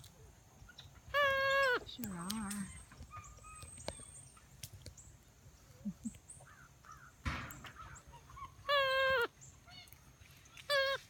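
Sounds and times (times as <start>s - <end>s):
faint animal calls: 0.7s - 4.3s, 6.0s - 11.0s.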